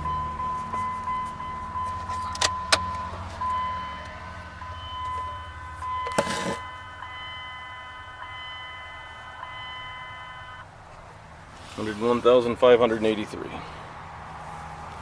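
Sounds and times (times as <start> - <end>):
high electronic warning tone: 0.0 - 10.6.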